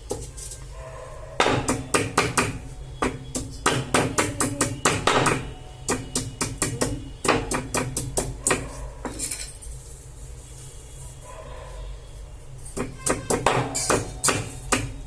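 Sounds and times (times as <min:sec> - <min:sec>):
pestle pounding in a mortar: 0:01.4 - 0:09.2, 0:12.8 - 0:15.0.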